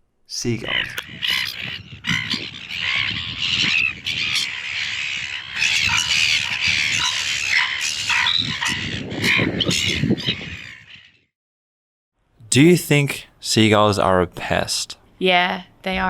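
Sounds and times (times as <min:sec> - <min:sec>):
gulls squawking and calling: 0:00.5 - 0:11.2.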